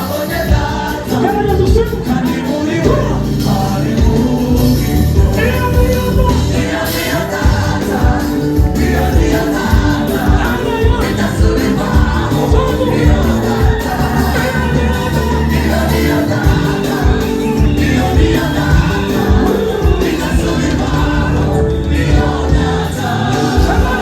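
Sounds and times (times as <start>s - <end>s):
band with bass-heavy beat: 0.0s - 24.0s
gospel choir singing: 0.0s - 24.0s.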